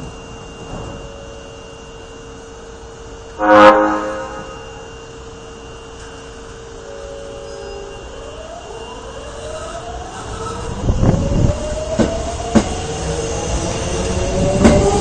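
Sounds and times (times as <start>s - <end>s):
train door chime: 0.0s - 8.3s
steady hum with high whistle: 0.0s - 15.0s.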